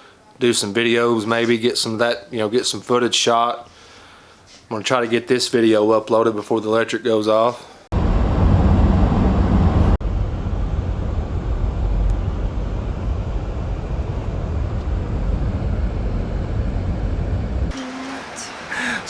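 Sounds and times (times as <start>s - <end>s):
vehicle rumble: 7.9s - 19.0s.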